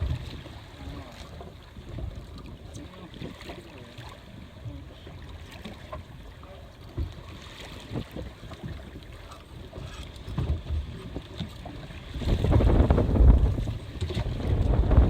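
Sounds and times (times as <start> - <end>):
wind buffeting microphone: 0.0 - 1.0, 7.8 - 15.0.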